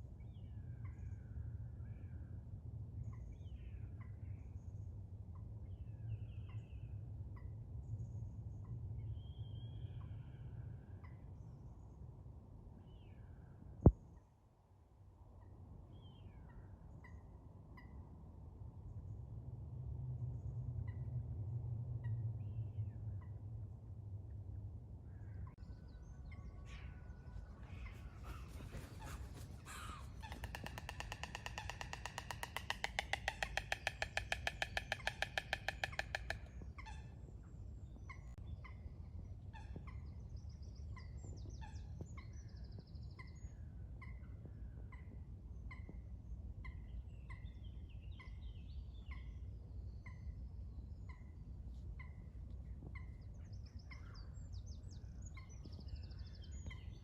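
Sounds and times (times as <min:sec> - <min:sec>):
stork clattering its bill: 0:28.2 - 0:36.4.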